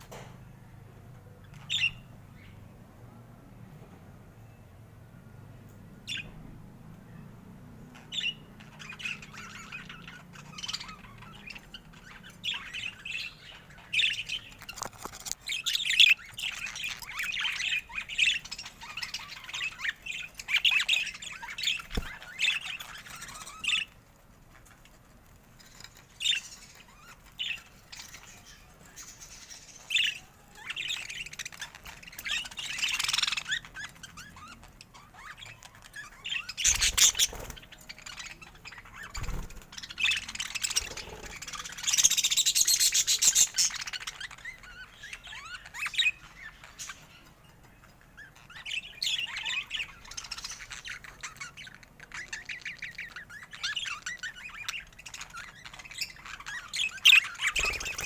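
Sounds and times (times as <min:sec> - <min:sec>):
budgerigar chirps and squawks: 0:26.3 - 0:47.2, 0:48.1 - 0:58.0.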